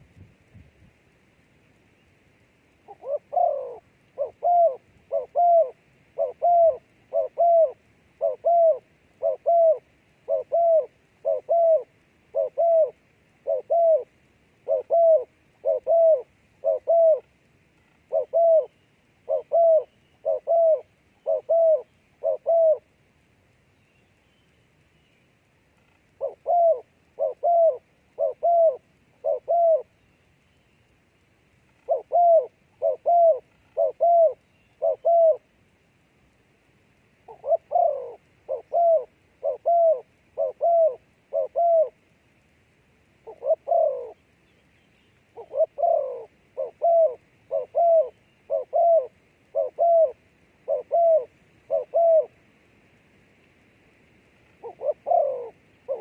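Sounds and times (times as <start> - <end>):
dove cooing: 2.8 - 17.3, 18.0 - 22.9, 26.1 - 30.0, 31.8 - 35.5, 37.3 - 42.0, 43.2 - 44.3, 45.3 - 52.4, 54.5 - 56.0.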